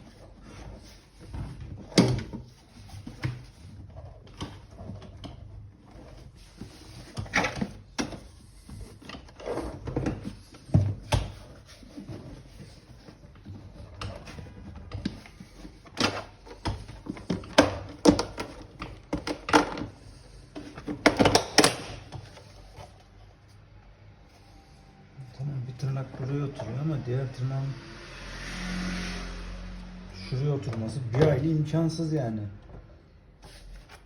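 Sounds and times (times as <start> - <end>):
plastic parts knocking and clicking: 13.3 - 22.5.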